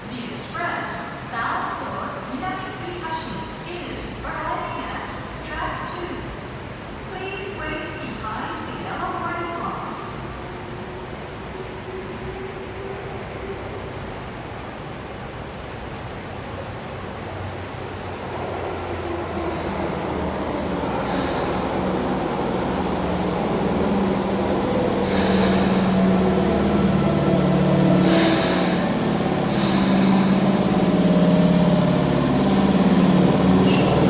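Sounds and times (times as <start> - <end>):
electric train arriving: 0.0 - 34.0
low steady train hum: 0.0 - 34.0
train clanks: 17.6 - 34.0.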